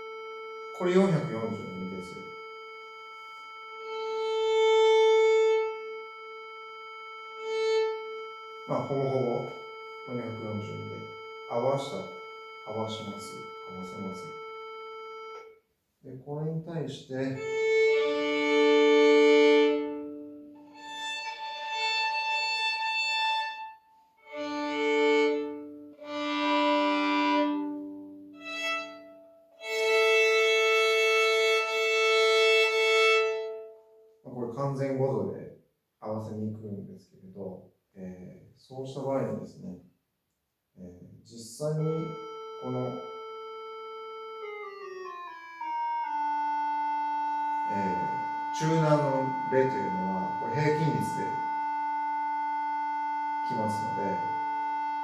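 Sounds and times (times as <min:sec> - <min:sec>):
violin string bowed: 0:00.0 - 0:15.5, 0:16.4 - 0:35.2, 0:41.4 - 0:55.0
electronic reference tone: 0:00.0 - 0:15.6, 0:41.4 - 0:44.6, 0:46.3 - 0:55.0.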